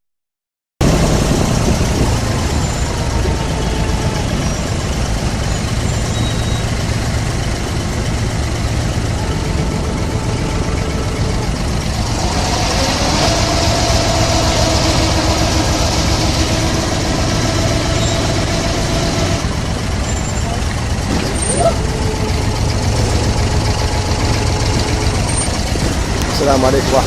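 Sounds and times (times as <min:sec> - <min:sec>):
boat diesel engine droning: 0:00.8 - 0:27.0.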